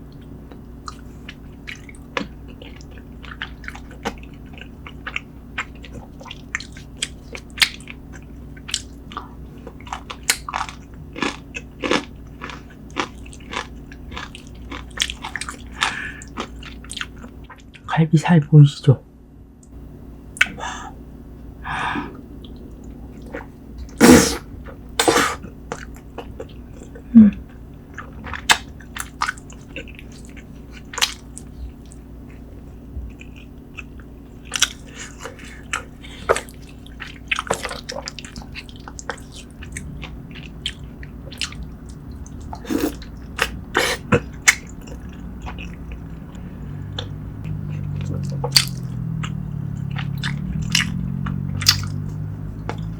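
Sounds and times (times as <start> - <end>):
chewing meat: 0.0 - 17.8, 22.2 - 52.9
faint low hum: 0.0 - 52.9
wet mouth smacks: 51.6 - 52.0.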